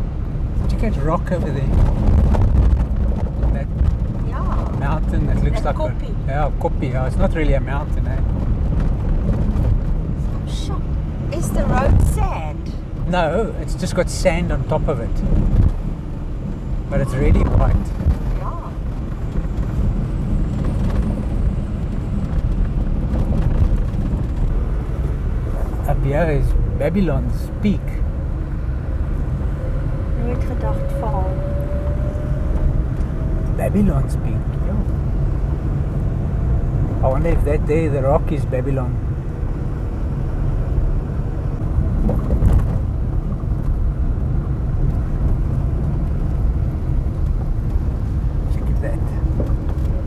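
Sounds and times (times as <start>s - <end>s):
car driving on gravel road: 0.0s - 50.0s.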